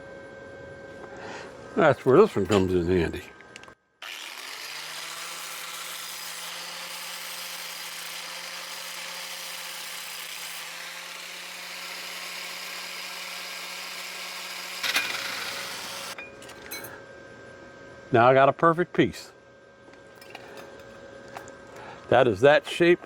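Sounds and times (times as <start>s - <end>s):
power tool motor humming: 4.0s - 16.2s.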